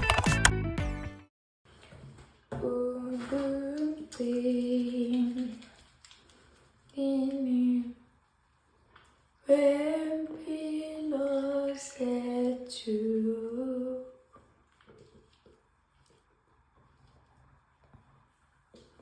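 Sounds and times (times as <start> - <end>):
woman singing unaccompanied: 2.6 - 5.6, 6.9 - 8.0, 9.5 - 14.2.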